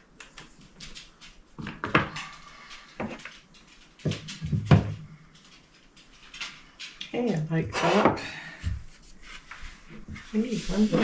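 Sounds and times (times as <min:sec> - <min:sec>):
objects knocking and clunking: 0:01.0 - 0:07.0.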